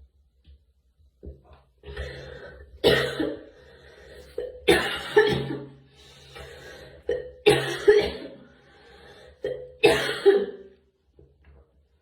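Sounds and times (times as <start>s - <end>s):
girl coughing: 2.8s - 3.5s, 4.7s - 5.7s, 7.4s - 8.4s, 9.8s - 10.6s.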